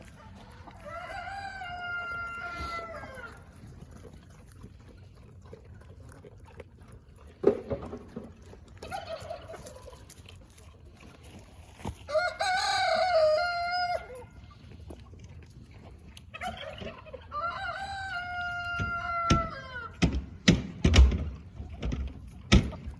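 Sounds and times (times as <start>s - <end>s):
rooster crowing: 0.8s - 3.4s, 12.1s - 14.3s, 17.3s - 19.9s
sharp knock: 20.0s - 21.4s.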